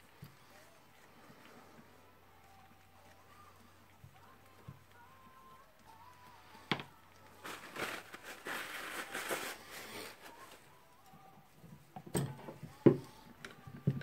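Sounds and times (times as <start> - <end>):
scraping and rustling: 6.0 - 10.8.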